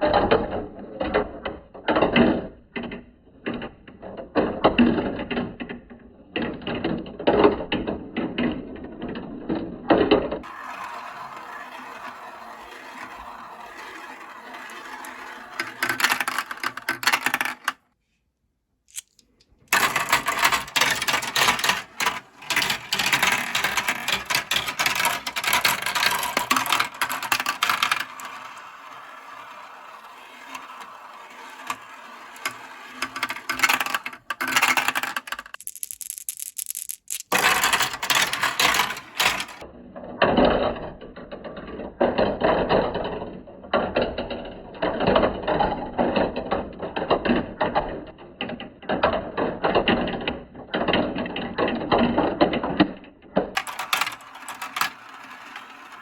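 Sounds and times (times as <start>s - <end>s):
marbles rattling down plastic track: 10.4s - 17.8s, 19.7s - 39.7s, 53.5s - 56.0s.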